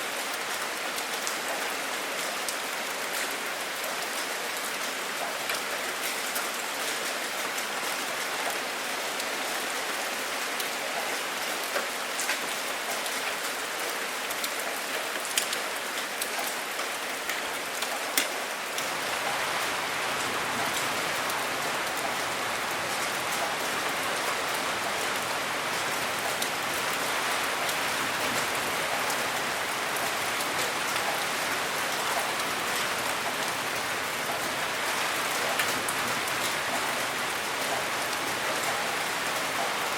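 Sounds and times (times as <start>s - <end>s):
steady rain falling: 0.0s - 39.9s
rain drops ticking: 0.1s - 39.9s.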